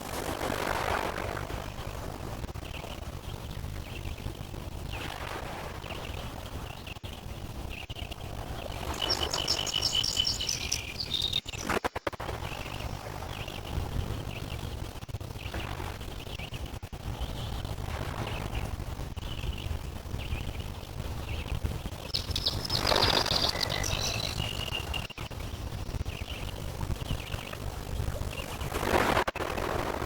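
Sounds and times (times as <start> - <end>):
wind rumble on microphone: 0.0 - 30.0
birds chirping: 5.8 - 14.7, 18.3 - 28.6
rapid repeated bird notes: 5.8 - 28.7
small waves lapping: 8.6 - 12.0, 22.1 - 26.0.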